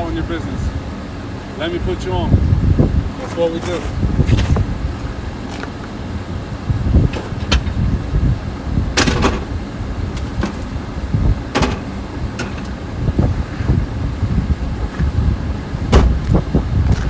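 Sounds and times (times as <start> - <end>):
road traffic rumble: 0.0 - 17.0
knocks and clanks: 7.1 - 7.8, 9.0 - 9.5, 10.1 - 10.8, 11.5 - 12.8, 15.9 - 17.0.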